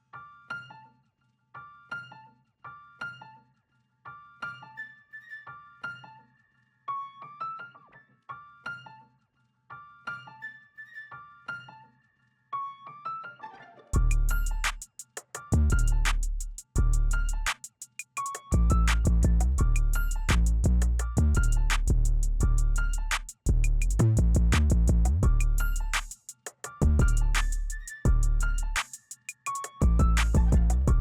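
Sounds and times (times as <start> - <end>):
loud deep bass: 14.0 - 14.4, 18.6 - 22.8, 23.5 - 25.8, 26.8 - 27.4, 29.8 - 31.0
piano melody over soft bass: 18.6 - 23.6, 26.8 - 28.8, 29.8 - 31.0.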